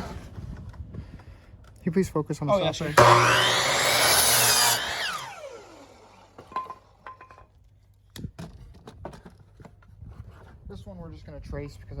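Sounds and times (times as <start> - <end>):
power saw cutting wood: 2.8 - 6.6
saw blade spinning down: 2.9 - 6.5.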